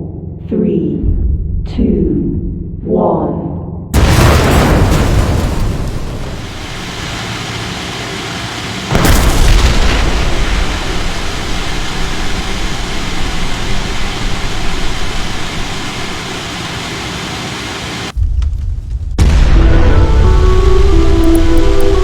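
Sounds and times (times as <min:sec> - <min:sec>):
large explosions with rumble: 0:04.0 - 0:16.5, 0:18.1 - 0:21.4.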